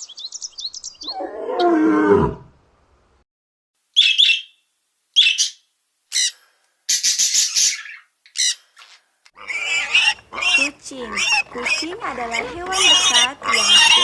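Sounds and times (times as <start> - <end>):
high bird chirps: 0.0 - 1.2, 4.0 - 4.6, 5.2 - 8.6.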